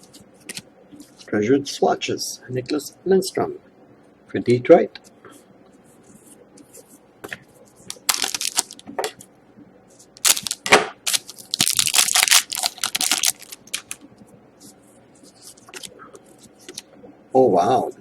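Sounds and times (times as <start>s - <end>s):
foil wrapper tearing and crinkling: 7.9s - 8.8s, 10.2s - 14.0s.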